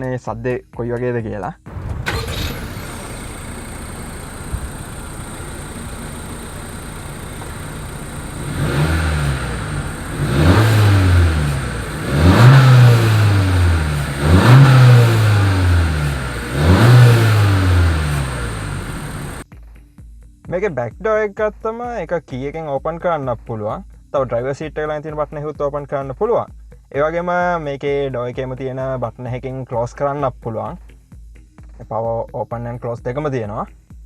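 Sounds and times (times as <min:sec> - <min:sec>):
car engine idling: 0:01.7 - 0:19.4
engine revving: 0:01.7 - 0:19.4.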